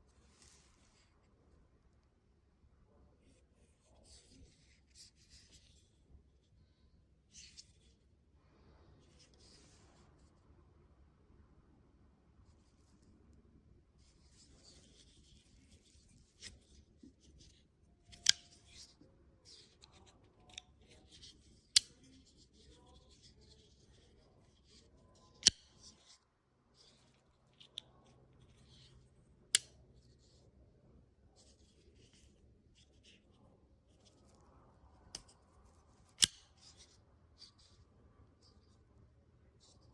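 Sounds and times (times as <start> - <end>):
folding knife clicks: 18.1 - 18.6, 25.4 - 25.7, 36.1 - 36.7.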